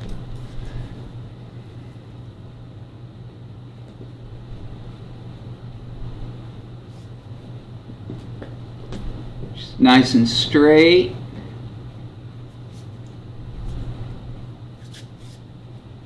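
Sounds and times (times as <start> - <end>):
air conditioner humming: 0.0 - 16.0.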